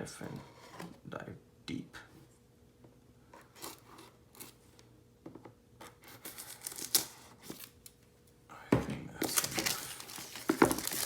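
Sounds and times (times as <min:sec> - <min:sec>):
knife cutting packaging: 0:06.1 - 0:07.7, 0:09.2 - 0:11.0
packaging crinkling: 0:06.1 - 0:07.9, 0:09.2 - 0:11.0.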